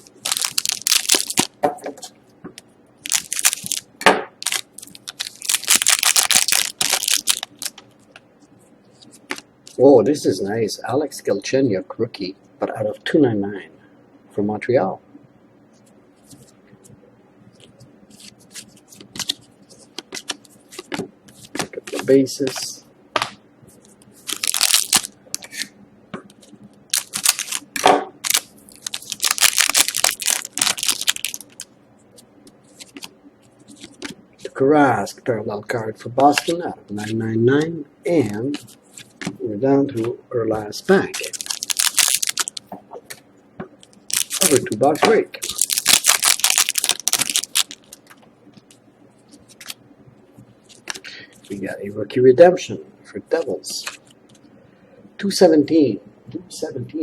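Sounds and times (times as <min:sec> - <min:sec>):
foil wrapper crinkling: 0:00.0 - 0:01.6, 0:03.0 - 0:07.8, 0:24.2 - 0:25.7, 0:26.4 - 0:31.7, 0:32.7 - 0:34.2, 0:41.1 - 0:42.7, 0:43.8 - 0:49.8.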